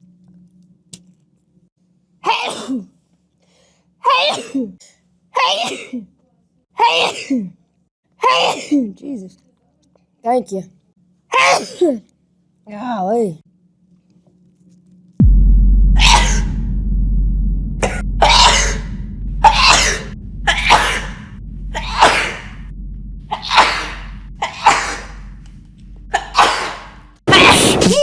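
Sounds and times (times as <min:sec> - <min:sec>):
woman sneezing: 0:04.0 - 0:04.8, 0:11.3 - 0:12.0
low hum: 0:15.2 - 0:27.2.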